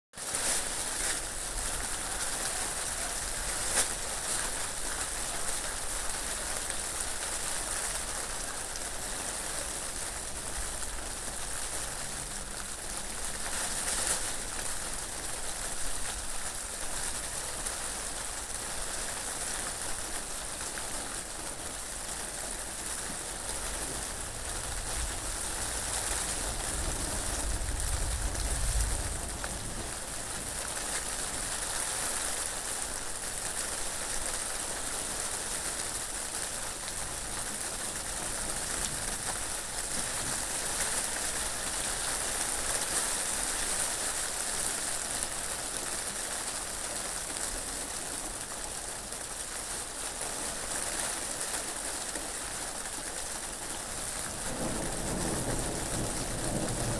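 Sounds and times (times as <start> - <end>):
steady rain falling: 0.2 - 56.9
wind gusts: 23.5 - 30.7.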